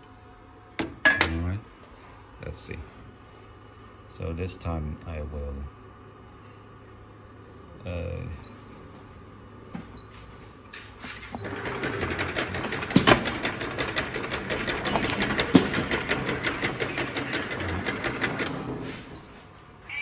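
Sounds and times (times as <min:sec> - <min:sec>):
labeling machine clattering: 0:11.4 - 0:18.8.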